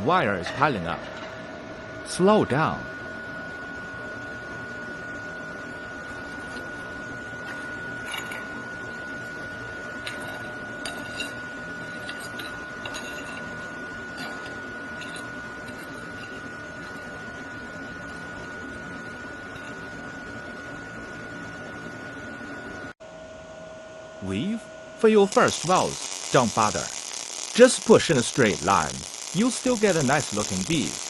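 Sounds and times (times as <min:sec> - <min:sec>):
welding arc hissing: 0:25.1 - 0:31.0
spatter crackles: 0:25.3 - 0:31.0.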